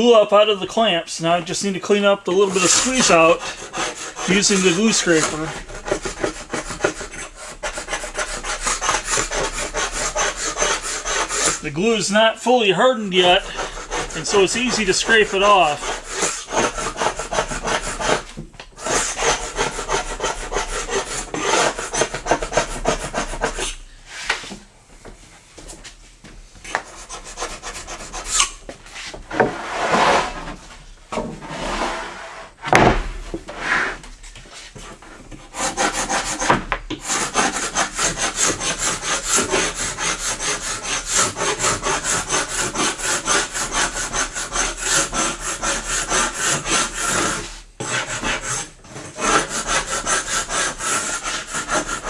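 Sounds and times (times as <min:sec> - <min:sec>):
scraper scraping glue off wood: 0:02.4 - 0:11.9, 0:13.2 - 0:23.8, 0:35.4 - 0:52.0.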